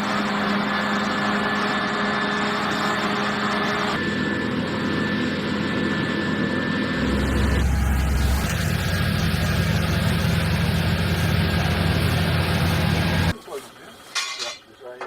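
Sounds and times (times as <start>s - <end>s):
thin steady whine: 6.9s - 13.3s
farm machinery engine hum: 7.0s - 13.3s.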